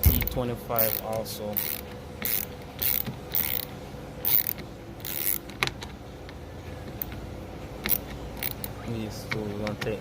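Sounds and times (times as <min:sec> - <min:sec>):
ratchet clicking: 0:00.0 - 0:05.7, 0:07.8 - 0:08.7.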